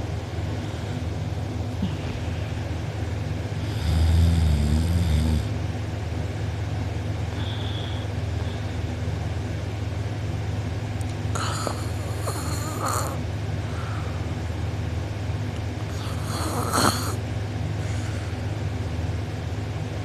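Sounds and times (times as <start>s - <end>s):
steady low hum: 0.0s - 20.0s
person snoring: 3.6s - 5.5s, 11.3s - 13.2s, 15.9s - 17.2s.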